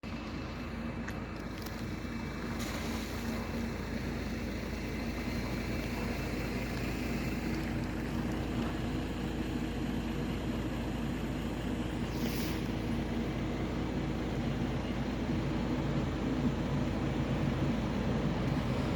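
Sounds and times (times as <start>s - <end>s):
tram motor hum: 0.0s - 18.9s
short hiss: 12.1s - 12.8s.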